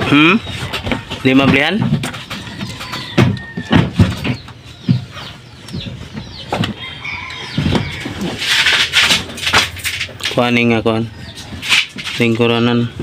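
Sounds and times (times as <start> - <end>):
tools and metal parts clanking: 7.9 - 10.7.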